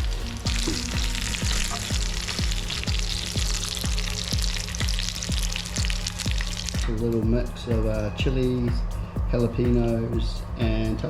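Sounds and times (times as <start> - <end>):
fish frying in hot oil: 0.0 - 7.2
background music with a beat: 0.0 - 11.0.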